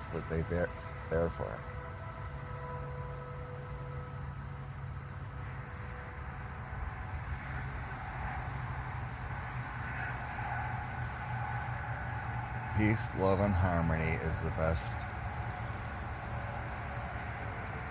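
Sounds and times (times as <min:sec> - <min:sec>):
high-pitched cricket-like tone: 0:00.0 - 0:17.9.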